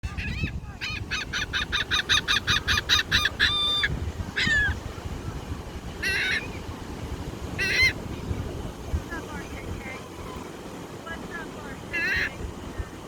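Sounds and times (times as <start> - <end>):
gulls calling: 0.0 - 13.0.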